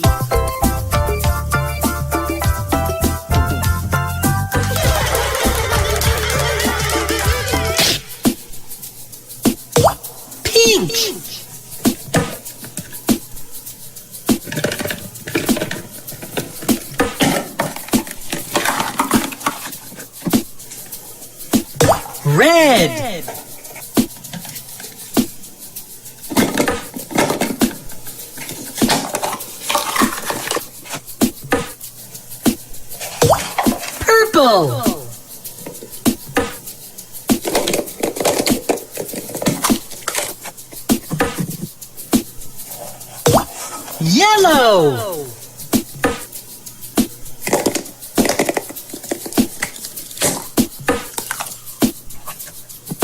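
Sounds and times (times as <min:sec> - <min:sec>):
wrapper rustling: 0:23.2 - 0:32.1.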